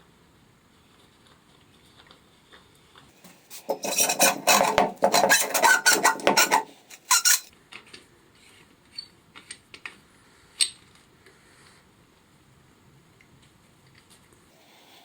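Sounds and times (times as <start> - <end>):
rasping strokes on wood: 3.2 - 7.5.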